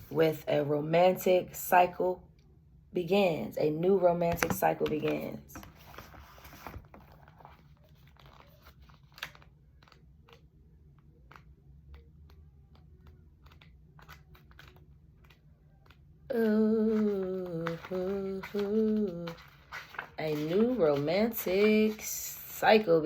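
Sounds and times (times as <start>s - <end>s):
small clicks and crinkling rustles: 4.4s - 22.6s
woman humming: 16.3s - 19.4s.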